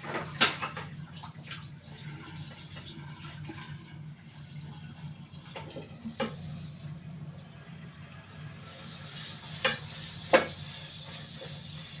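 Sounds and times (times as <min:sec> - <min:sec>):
food sizzling in a pan: 0:08.6 - 0:12.0.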